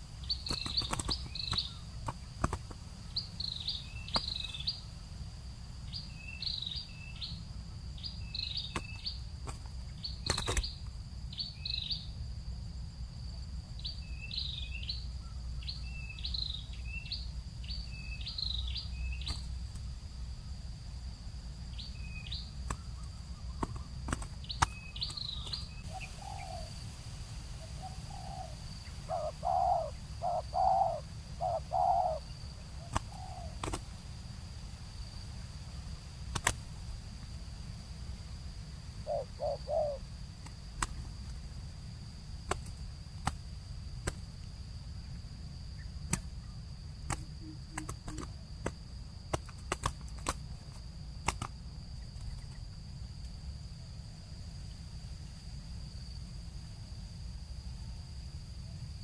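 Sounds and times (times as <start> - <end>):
dove cooing: 25.8 - 26.8, 27.6 - 33.7, 39.0 - 40.1.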